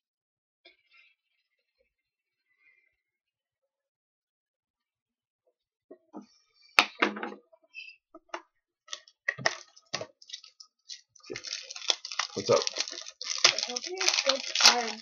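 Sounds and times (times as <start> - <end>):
clicks and rustles: 8.9 - 15.0.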